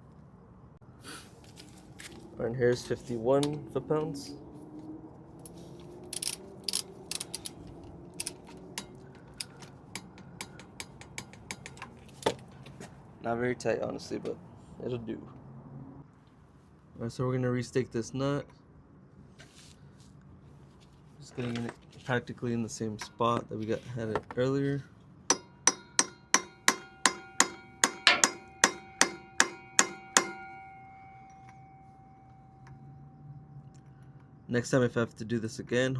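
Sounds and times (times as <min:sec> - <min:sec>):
ratcheting torque wrench clicks: 0:06.2 - 0:07.6
hammer striking metal: 0:08.8 - 0:09.0, 0:10.0 - 0:12.0, 0:25.3 - 0:34.0
metallic ringing tone: 0:25.3 - 0:34.8.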